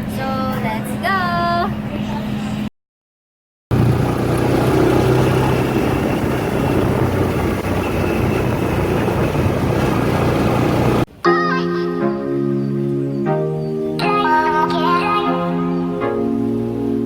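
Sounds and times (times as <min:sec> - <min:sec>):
vehicle engine humming: 0:03.7 - 0:11.1
road and wind noise: 0:03.7 - 0:11.2.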